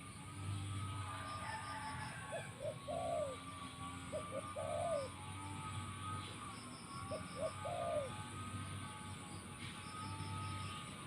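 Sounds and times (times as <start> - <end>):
dove cooing: 0.7 - 8.9.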